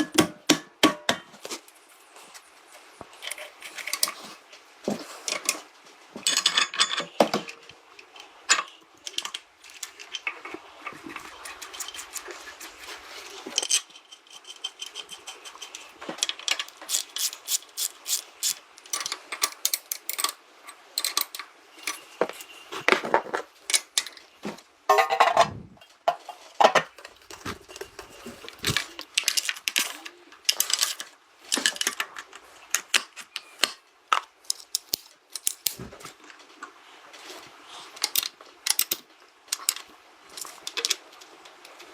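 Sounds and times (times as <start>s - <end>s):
metallic clicks and clinks: 6.2s - 12.4s, 13.5s - 22.7s, 27.0s - 35.8s.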